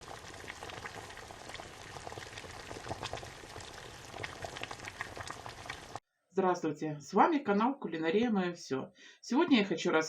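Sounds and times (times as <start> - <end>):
water boiling: 0.0 - 6.0.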